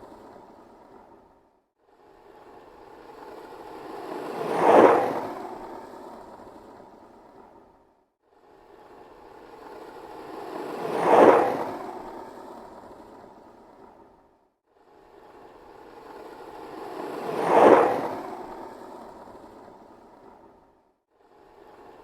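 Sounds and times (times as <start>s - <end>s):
skateboard wheels rolling: 3.1s - 5.9s, 9.5s - 12.1s, 16.0s - 20.5s.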